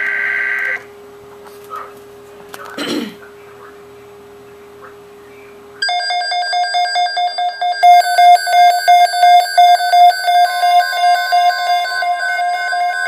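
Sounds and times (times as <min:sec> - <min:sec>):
steady alert tone: 0:07.8 - 0:13.0.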